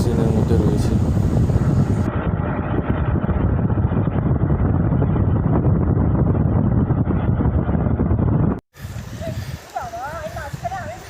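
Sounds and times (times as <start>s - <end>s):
wind noise on microphone: 0.0s - 11.0s.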